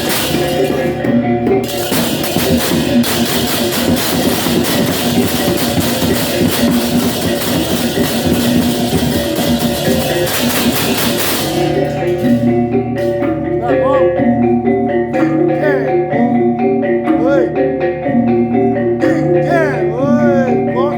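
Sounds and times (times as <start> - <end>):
cymbals and drums: 0.0 - 14.2
ringing gong tones: 0.0 - 20.9.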